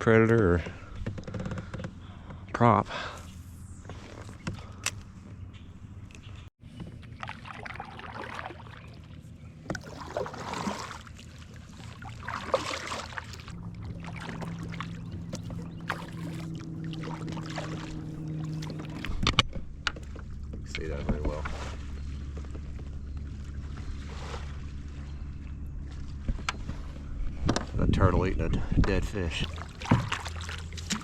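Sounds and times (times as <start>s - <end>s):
paddle splashing: 6.9s - 25.1s, 29.3s - 31.0s
water swishing and dripping: 7.0s - 27.0s, 29.3s - 31.0s
steady low hum: 8.8s - 27.8s.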